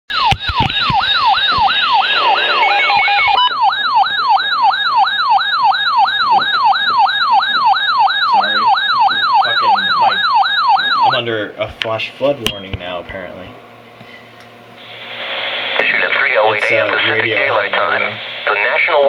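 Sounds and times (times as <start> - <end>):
stepped electronic beeping: 0.1 - 11.1
electronic yelping siren: 0.1 - 11.2.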